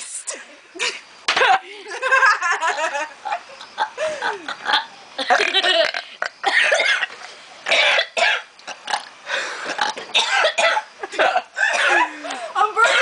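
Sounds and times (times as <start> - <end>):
person burping and coughing: 4.4 - 12.1.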